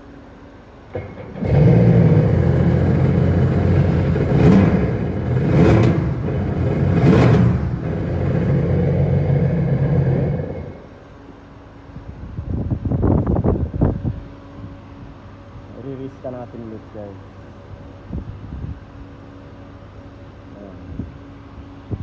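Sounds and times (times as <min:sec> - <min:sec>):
watercraft engine starting and revving: 0:00.9 - 0:11.0.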